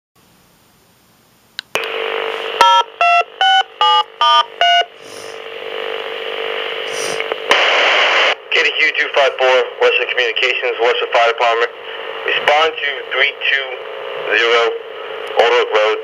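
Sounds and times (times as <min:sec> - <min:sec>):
radio click: 0:01.6 - 0:02.0, 0:07.1 - 0:08.4
radio static hiss: 0:01.8 - 0:16.0
two-pitch paging tones: 0:02.6 - 0:04.9.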